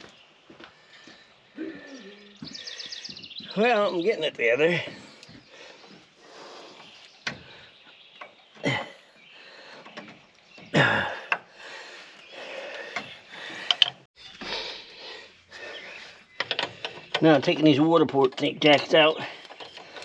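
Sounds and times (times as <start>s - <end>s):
tools clicking and knocking: 12.9s - 14.0s, 16.4s - 20.0s.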